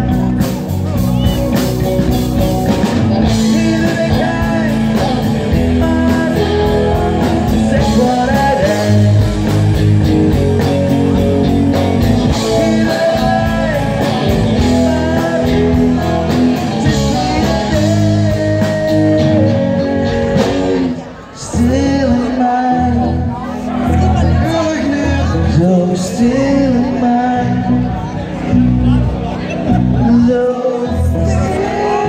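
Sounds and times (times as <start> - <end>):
steady drum beat: 0.0 - 20.9
guitar: 0.0 - 32.0
person singing: 2.7 - 28.1, 29.8 - 32.0.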